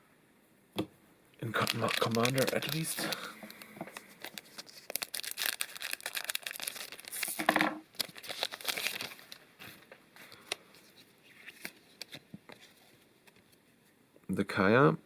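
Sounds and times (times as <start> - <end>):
foil wrapper crinkling and tearing: 1.4 - 12.8.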